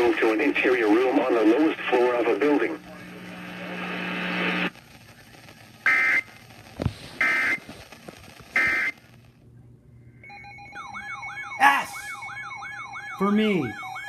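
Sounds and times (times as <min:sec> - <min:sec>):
radio hiss: 0:00.0 - 0:09.4.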